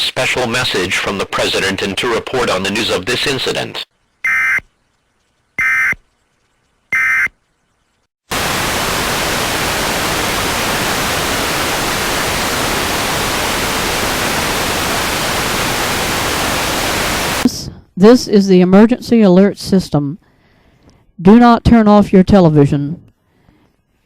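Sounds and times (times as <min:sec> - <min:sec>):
loud static hiss: 0:00.0 - 0:17.6.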